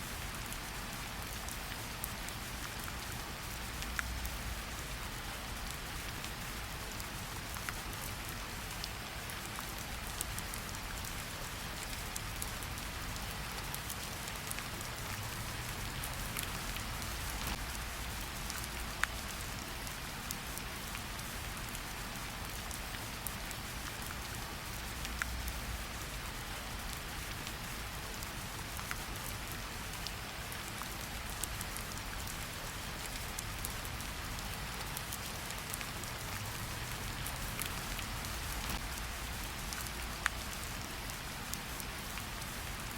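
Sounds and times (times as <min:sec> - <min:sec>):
steady rain falling: 0:00.0 - 0:42.9.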